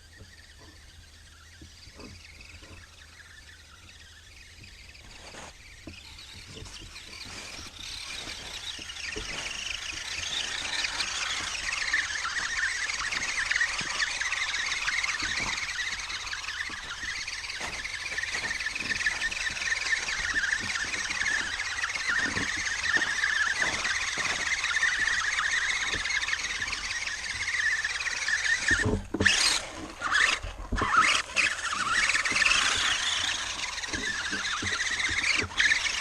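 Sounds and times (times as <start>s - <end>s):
electric motor whining: 0.0s - 36.0s
wheels spinning in mud: 0.0s - 36.0s.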